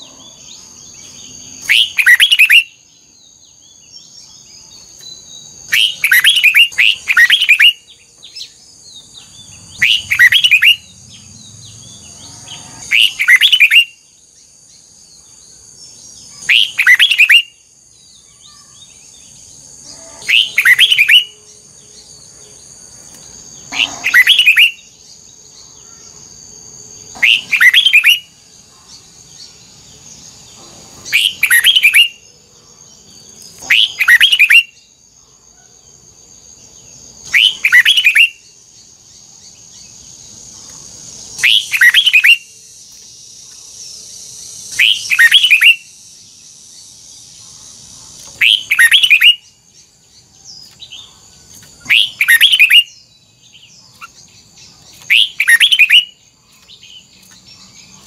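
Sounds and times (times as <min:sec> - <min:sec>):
bird singing double-note phrases: 0:00.0 - 0:03.8, 0:05.0 - 0:14.1, 0:16.3 - 0:22.7, 0:23.4 - 0:25.0.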